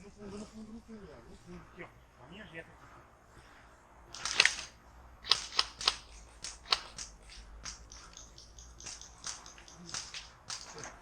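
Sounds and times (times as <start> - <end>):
sharp clicks and snaps: 4.1 - 11.0.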